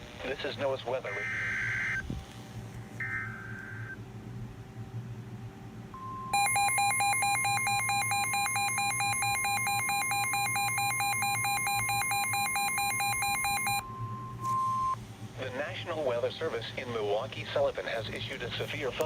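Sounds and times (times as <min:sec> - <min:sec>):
steady high alarm tone: 0:06.0 - 0:15.0
electronic alarm warbling: 0:06.3 - 0:13.9.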